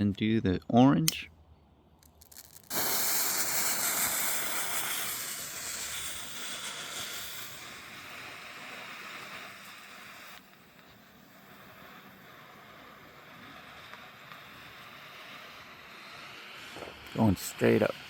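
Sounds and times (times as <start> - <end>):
smoke bomb hissing: 2.0 - 18.0.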